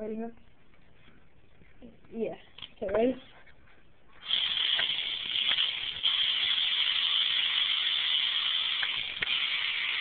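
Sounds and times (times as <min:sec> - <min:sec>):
toy car electric motor whine: 0:04.2 - 0:10.0.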